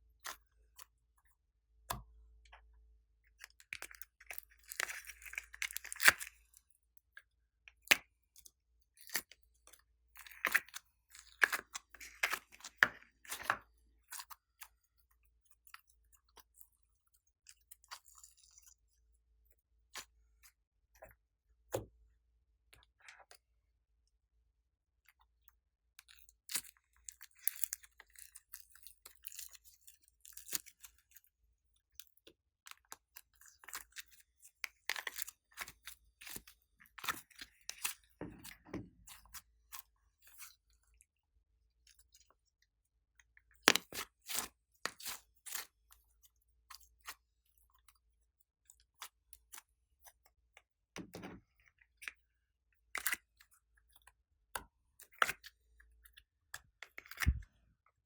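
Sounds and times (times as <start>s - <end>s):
sticky slime clicks and crackles: 3.5s - 6.4s.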